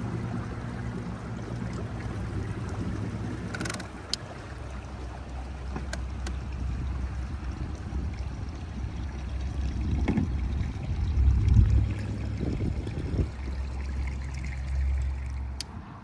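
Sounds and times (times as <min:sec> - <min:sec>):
water sloshing around boat: 0:00.0 - 0:16.0
low rumble: 0:04.6 - 0:16.0.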